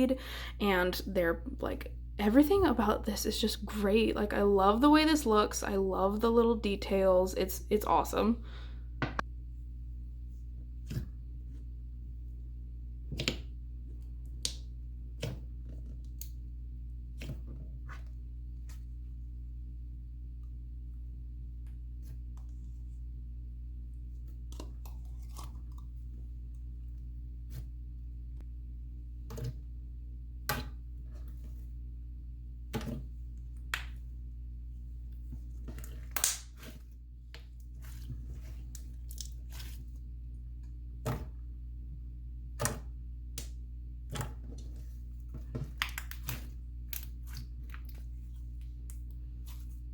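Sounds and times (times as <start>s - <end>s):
low hum: 0.0s - 49.9s
slime squishing: 24.2s - 26.6s, 35.2s - 40.2s, 44.1s - 49.9s.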